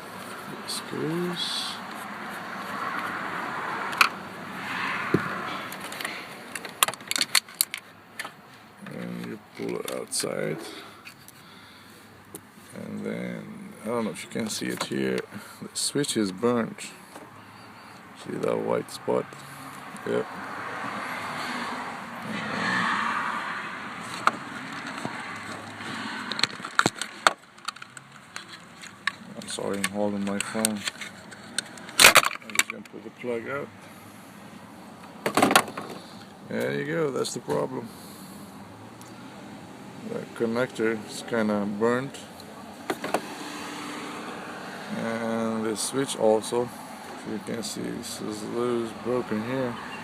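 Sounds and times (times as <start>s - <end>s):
rustling handling noise: 24.0s - 33.0s.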